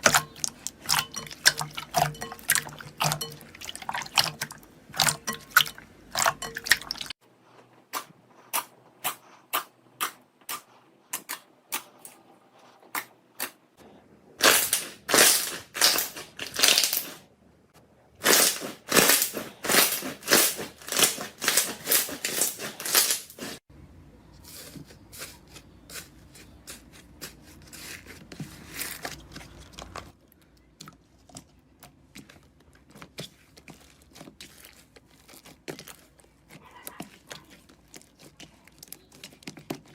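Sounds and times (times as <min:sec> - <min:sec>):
slime crackling and popping: 0:14.4 - 0:17.2, 0:18.2 - 0:23.5.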